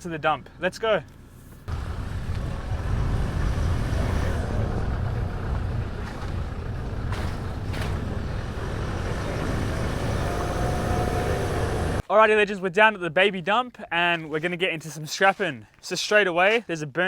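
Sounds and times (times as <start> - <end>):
car engine and road noise: 1.1 - 12.0.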